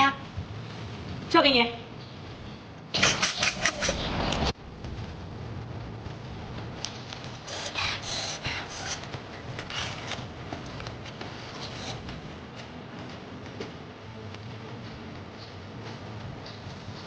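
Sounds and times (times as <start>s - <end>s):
rubbing and rustling handling: 7.0s - 12.3s.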